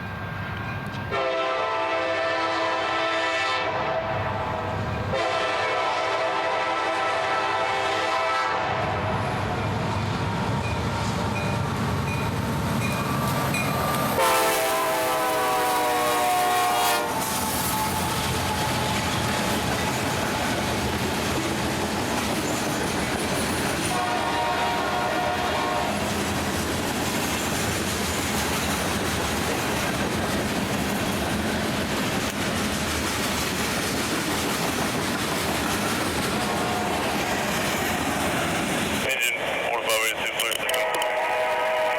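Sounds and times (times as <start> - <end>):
diesel locomotive engines rumbling: 0.0 - 41.9
locomotive horn blasts: 1.1 - 9.2, 14.2 - 18.0, 23.9 - 26.0, 36.4 - 37.1, 40.7 - 41.9
train wheels clattering: 17.1 - 24.8, 25.8 - 39.1.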